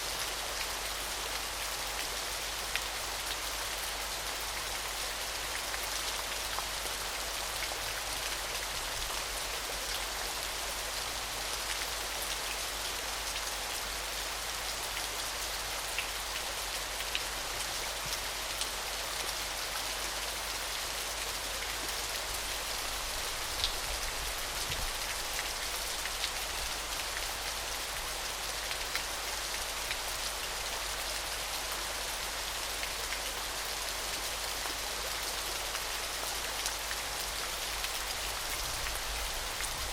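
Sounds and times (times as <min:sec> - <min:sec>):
small waterfall splashing: 0:00.0 - 0:39.9.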